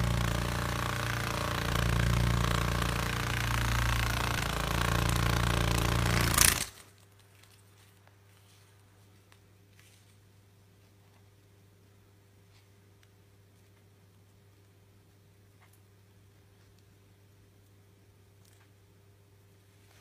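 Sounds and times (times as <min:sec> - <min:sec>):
beetle wings buzzing: 0:00.0 - 0:06.7.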